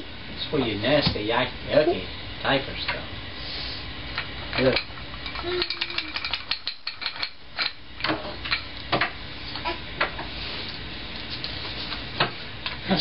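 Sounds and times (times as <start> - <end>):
toy blocks clattering: 5.3 - 7.3.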